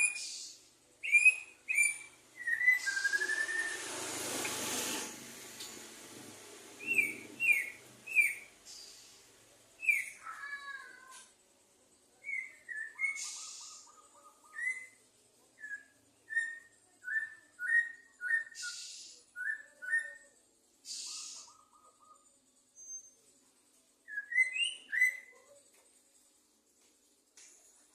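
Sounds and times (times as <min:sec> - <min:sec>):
bird singing whistled notes: 0:00.0 - 0:03.9, 0:06.8 - 0:08.5, 0:09.8 - 0:10.3, 0:12.2 - 0:13.9, 0:14.5 - 0:15.0, 0:15.6 - 0:21.5, 0:22.8 - 0:23.2, 0:24.0 - 0:25.4
harsh rasping bird notes: 0:01.8 - 0:05.5.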